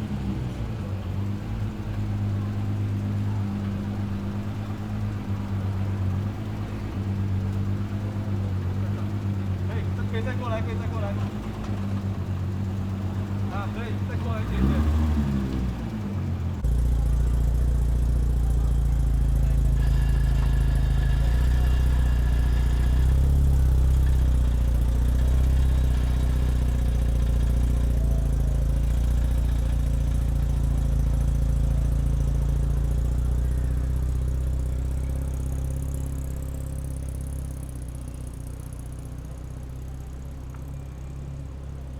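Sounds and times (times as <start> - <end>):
car engine idling: 0.0 - 41.9.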